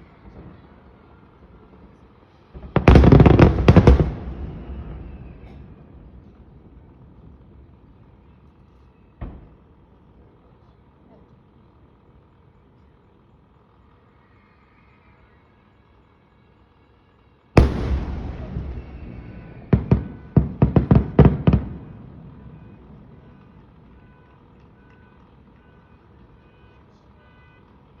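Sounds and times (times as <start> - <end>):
firework crackling: 0.0 - 14.2, 17.6 - 28.0
firework boom: 17.6 - 23.4.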